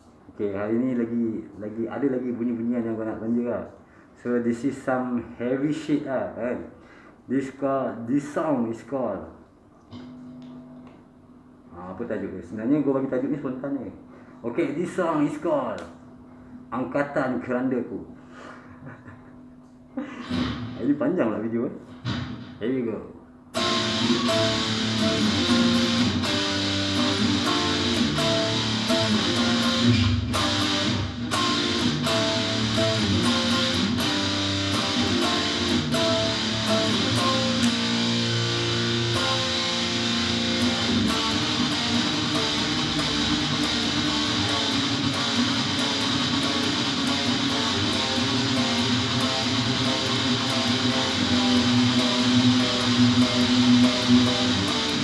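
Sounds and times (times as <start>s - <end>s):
heavy rock song: 23.6s - 55.0s.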